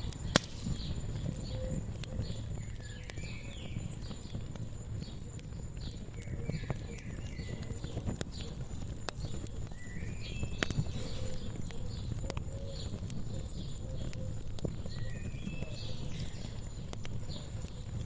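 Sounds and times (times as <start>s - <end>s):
birds chirping: 0.0s - 18.0s
wood fire crackling and popping: 0.0s - 18.0s.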